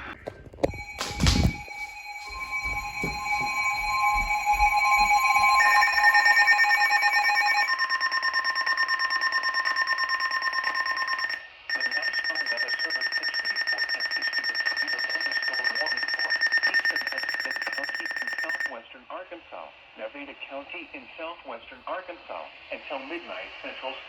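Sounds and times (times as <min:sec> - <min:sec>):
electronic alert tones: 0:00.0 - 0:18.7
rapid pulsing alarm: 0:00.6 - 0:18.8.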